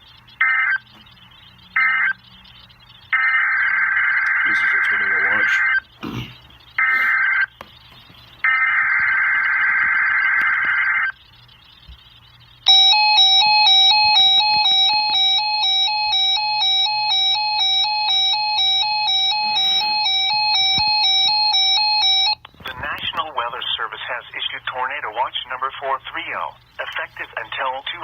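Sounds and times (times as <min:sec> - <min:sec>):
buzzing digital header data: 0:03.1 - 0:05.9, 0:12.6 - 0:22.4
electronic alert tone: 0:12.7 - 0:22.4.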